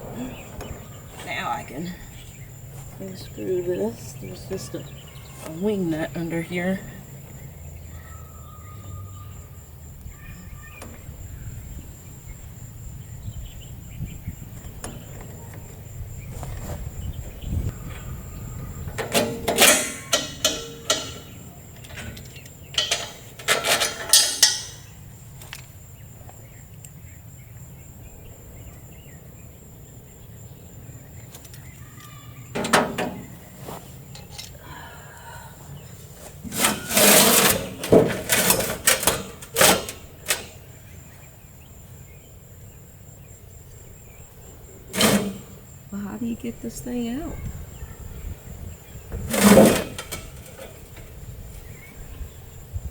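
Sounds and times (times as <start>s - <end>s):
metal clanking and scraping: 0.0s - 6.8s, 16.4s - 25.6s, 31.4s - 34.6s, 36.0s - 40.7s, 44.8s - 45.8s, 48.8s - 51.9s.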